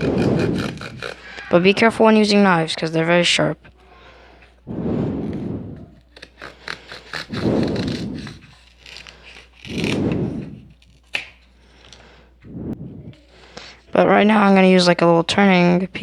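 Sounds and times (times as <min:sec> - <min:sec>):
knife sawing through cardboard: 0:00.0 - 0:01.3, 0:05.0 - 0:11.2.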